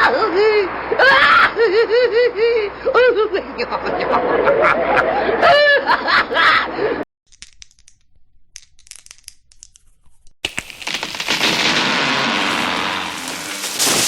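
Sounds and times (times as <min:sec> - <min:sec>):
sharp crackles and snaps: 0:07.3 - 0:14.0
loud sustained crash: 0:10.5 - 0:14.0.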